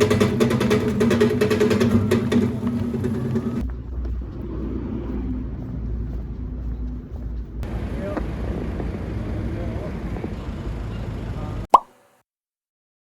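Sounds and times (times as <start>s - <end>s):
low steady rumble: 2.5s - 11.7s.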